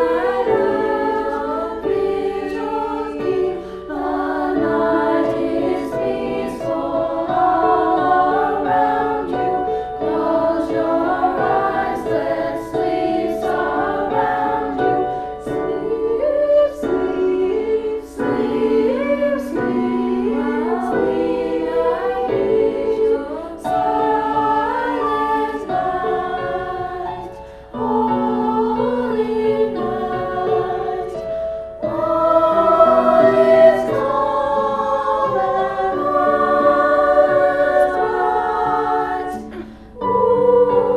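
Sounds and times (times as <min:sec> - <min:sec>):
choir singing slow song: 0:00.0 - 0:40.9
singers breathing: 0:03.5 - 0:03.9, 0:09.6 - 0:10.0, 0:27.3 - 0:27.8, 0:39.4 - 0:40.0.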